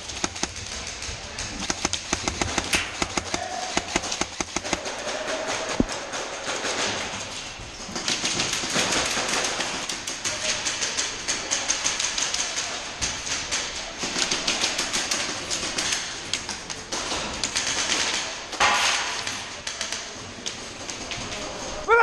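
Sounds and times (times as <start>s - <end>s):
airsoft guns firing: 0.0s - 7.2s.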